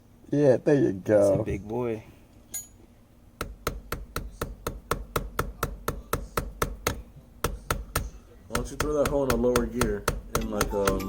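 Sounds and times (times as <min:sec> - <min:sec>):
rapid hammer taps on metal pin: 0:03.4 - 0:11.0.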